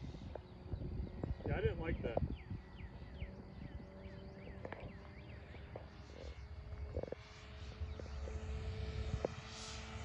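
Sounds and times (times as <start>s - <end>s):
distant model plane engine drone: 0.0s - 10.0s
wind rumble on microphone: 0.0s - 10.0s
bird chirping: 0.1s - 7.1s.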